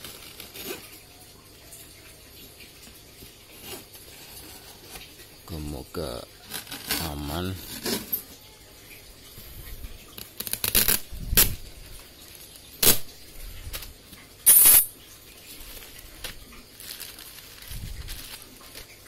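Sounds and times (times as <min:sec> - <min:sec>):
packaging scraping and crinkling: 0:00.0 - 0:01.0, 0:06.4 - 0:08.3, 0:15.5 - 0:19.0.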